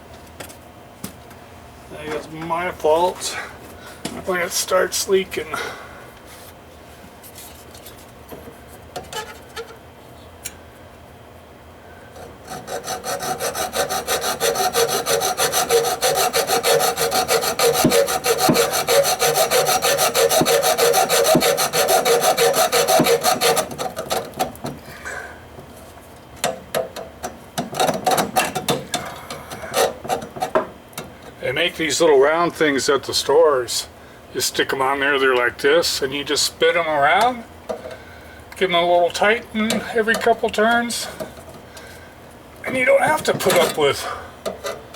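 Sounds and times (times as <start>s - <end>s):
rasping on copper pipe: 12.2s - 24.5s, 29.5s - 30.7s.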